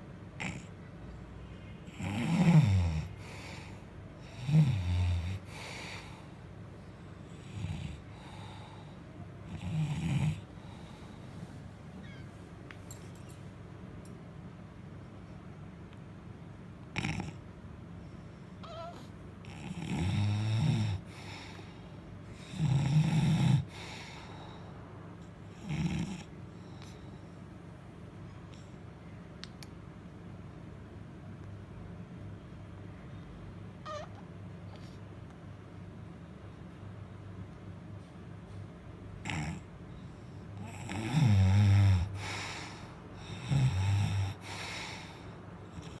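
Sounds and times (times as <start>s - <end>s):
man snoring: 1.9s - 6.2s, 9.5s - 11.0s, 17.0s - 17.4s, 19.5s - 21.3s, 22.4s - 23.9s, 25.6s - 26.3s, 39.2s - 39.6s, 40.6s - 46.0s.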